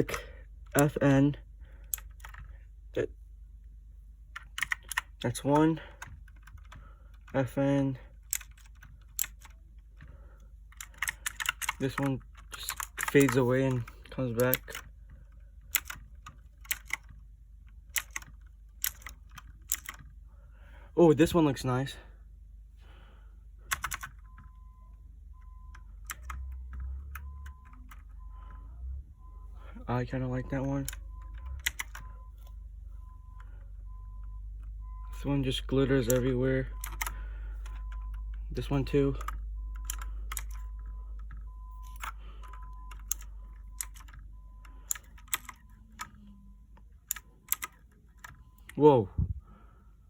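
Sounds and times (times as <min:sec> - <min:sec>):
mechanical keyboard clicks: 0:01.9 - 0:02.4, 0:04.4 - 0:05.6, 0:08.3 - 0:09.6, 0:10.8 - 0:14.9, 0:15.7 - 0:17.1, 0:17.9 - 0:20.0, 0:23.7 - 0:24.3, 0:26.0 - 0:26.4, 0:30.9 - 0:32.0, 0:36.1 - 0:38.0, 0:39.2 - 0:46.2, 0:47.0 - 0:48.7
low hum: 0:08.0 - 0:47.6, 0:48.2 - 0:50.0.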